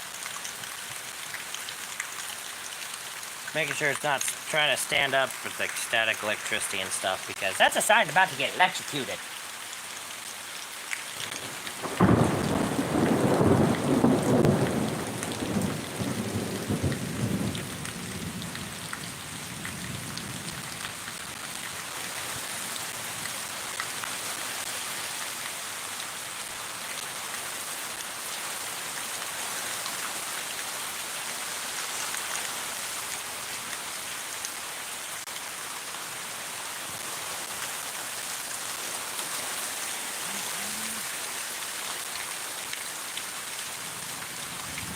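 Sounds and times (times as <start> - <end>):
heavy rain: 0.0 - 44.9
thunderclap rumbling: 11.8 - 18.5.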